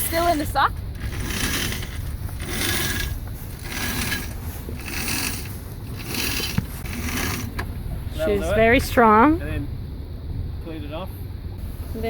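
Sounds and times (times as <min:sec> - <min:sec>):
rope ratcheting through pulley: 0:00.0 - 0:07.6.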